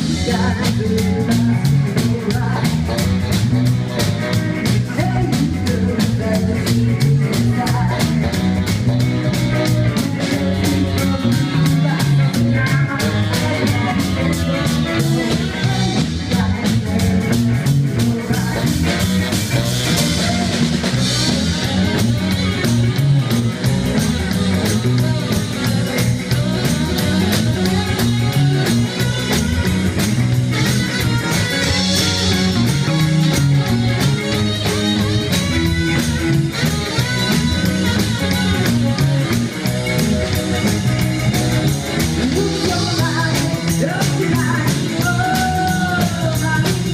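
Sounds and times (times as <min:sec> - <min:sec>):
bass guitar: 0:00.0 - 0:46.9
drum kit beat: 0:00.0 - 0:46.9
electric guitar: 0:00.0 - 0:46.9
person singing: 0:00.0 - 0:46.9.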